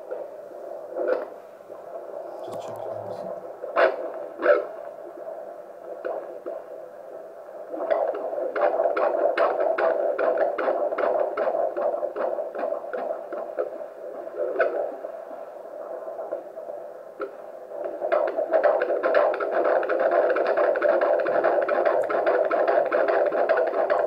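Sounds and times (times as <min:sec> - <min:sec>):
fast fetal heartbeat: 0:05.2 - 0:24.0.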